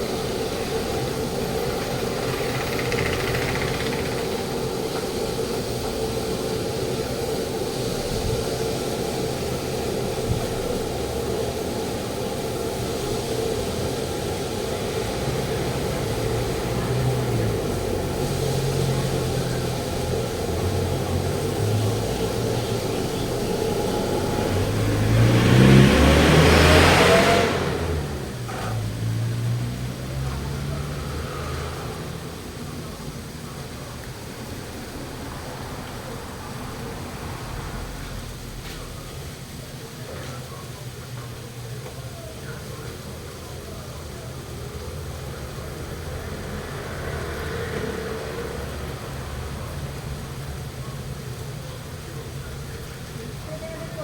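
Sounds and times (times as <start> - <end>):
road traffic: 0.0 - 54.0
vehicle passing close by: 12.6 - 39.9, 44.8 - 52.6.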